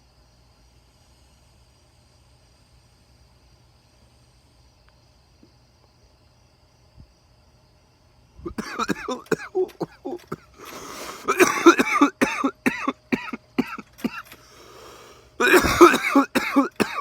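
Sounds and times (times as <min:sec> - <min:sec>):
man coughing hard: 0:08.5 - 0:14.4, 0:15.4 - 0:17.0
breaths drawn in: 0:09.6 - 0:11.4, 0:14.2 - 0:15.6.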